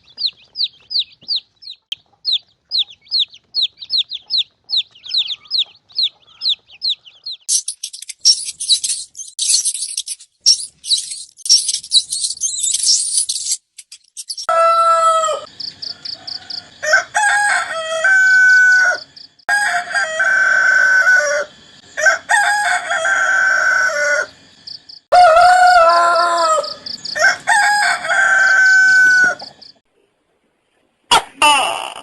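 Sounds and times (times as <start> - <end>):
rooster crowing: 14.5 - 24.4, 25.1 - 29.7.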